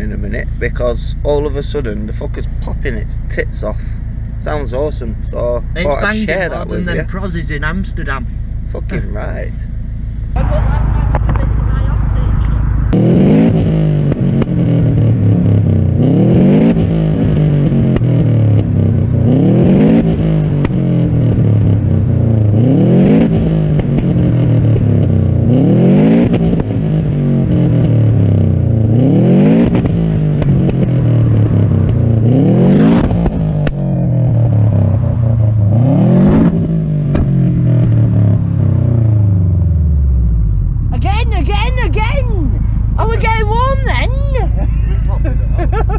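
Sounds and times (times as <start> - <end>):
car engine revving: 0.0 - 45.9
exhaust pops and bangs: 16.7 - 19.2, 19.9 - 22.0, 23.1 - 25.2, 26.1 - 28.4, 29.5 - 35.6, 36.2 - 38.4.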